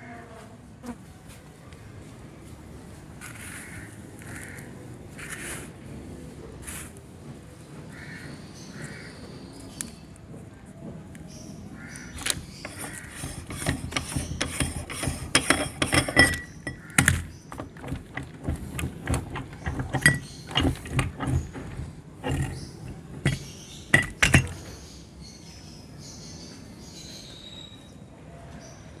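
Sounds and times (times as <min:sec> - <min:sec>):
meat grinder crushing hard candies: 0:12.2 - 0:23.4.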